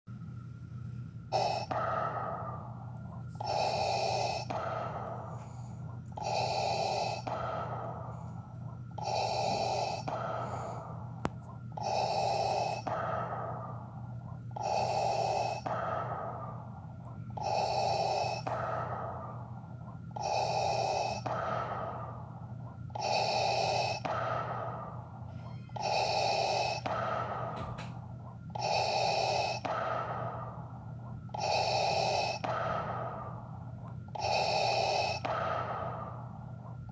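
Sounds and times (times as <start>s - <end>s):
mechanical breathing through a mask: 1.3s - 36.9s.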